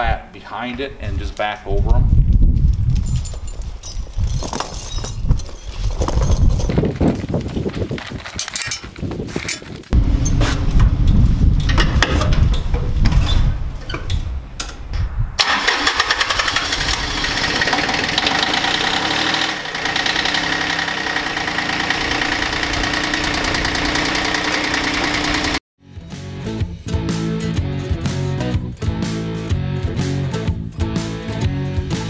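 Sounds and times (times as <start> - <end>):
tractor diesel engine running: 15.4 - 25.6.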